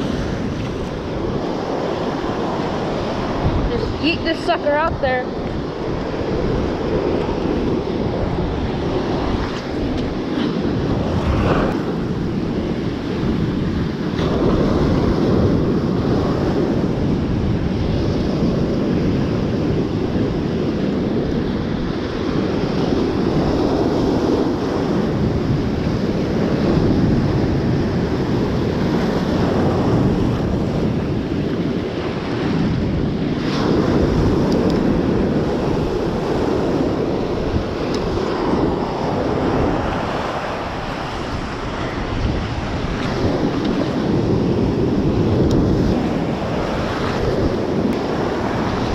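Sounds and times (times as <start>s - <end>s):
ocean surf on beach: 0.0s - 48.9s
wind buffeting microphone: 0.0s - 48.9s.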